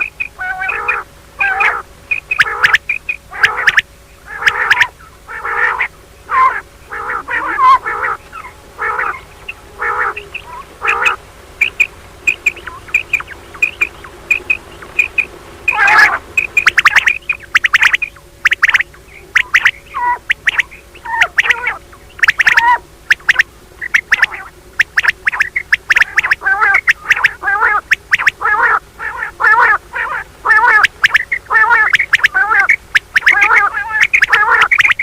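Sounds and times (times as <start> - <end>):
quail raspy call notes: 0.0 - 35.0.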